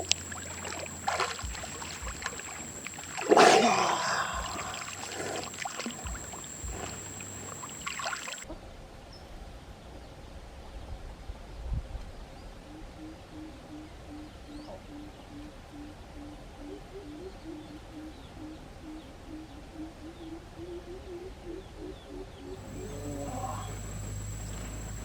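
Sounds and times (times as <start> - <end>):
bird hooting call: 0.0 - 8.4, 22.6 - 25.0.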